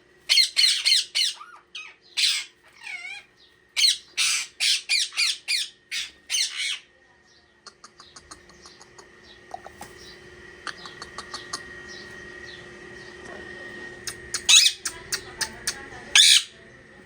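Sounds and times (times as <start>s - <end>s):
parrot chirping: 0.3s - 6.9s, 14.1s - 16.6s
parrot squawking: 0.3s - 6.9s, 14.3s - 16.5s.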